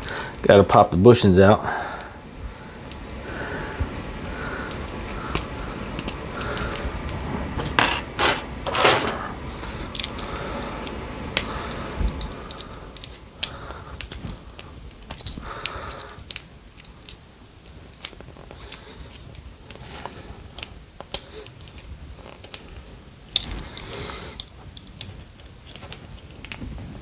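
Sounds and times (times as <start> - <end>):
scraping rustles: 7.4 - 9.4
small tools clicking and tapping: 7.6 - 9.3, 23.3 - 26.7.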